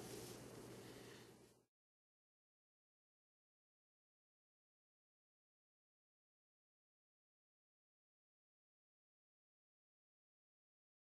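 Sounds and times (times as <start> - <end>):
low steady hum: 0.0 - 1.7.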